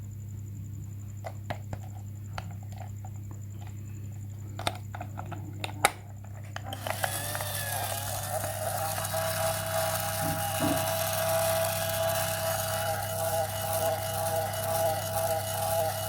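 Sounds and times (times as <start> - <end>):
small electric motor whining: 6.6 - 16.0.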